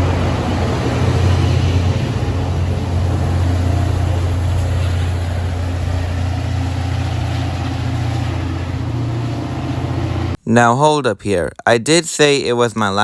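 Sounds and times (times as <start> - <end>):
wind noise: 0.0 - 10.3
diesel locomotive engine humming: 0.0 - 10.4
outdoor rumble: 0.0 - 10.4.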